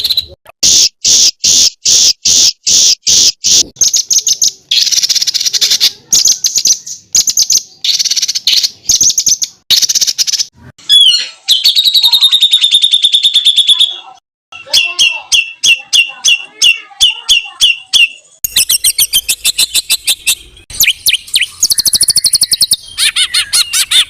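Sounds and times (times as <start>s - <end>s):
songbird fast trill: 0.0s - 24.0s
songbird harsh buzzy phrases: 10.6s - 24.0s.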